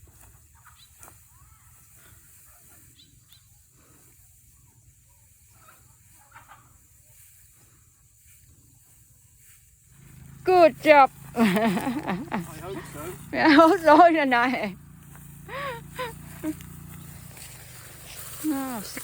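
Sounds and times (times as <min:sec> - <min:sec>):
steady hiss: 0:15.1 - 0:19.0.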